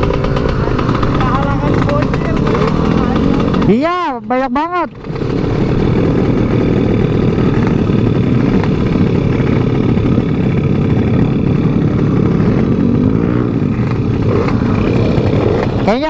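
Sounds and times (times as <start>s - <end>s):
motorcycle engine running: 0.0s - 16.0s
wind buffeting microphone: 4.9s - 16.0s.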